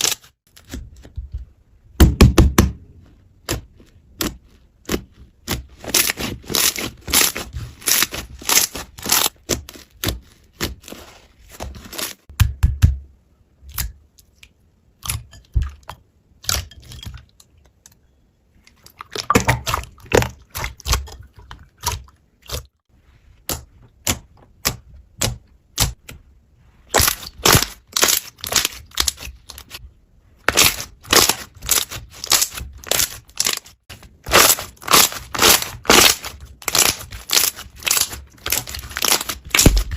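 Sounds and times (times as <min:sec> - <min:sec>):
slime crackling and popping: 0:03.4 - 0:10.9, 0:26.9 - 0:29.8, 0:30.5 - 0:39.9.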